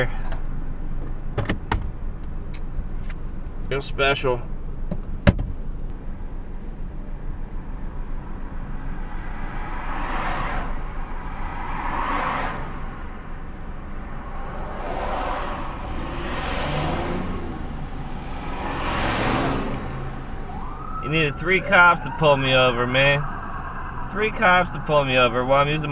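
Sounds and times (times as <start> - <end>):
car engine and road rumble: 0.0 - 25.9
vehicles swooshing past: 8.5 - 25.9.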